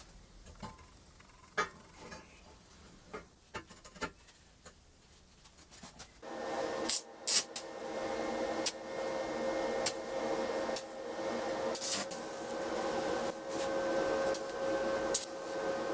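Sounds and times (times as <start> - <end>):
angle grinder motor humming: 6.2 - 15.9.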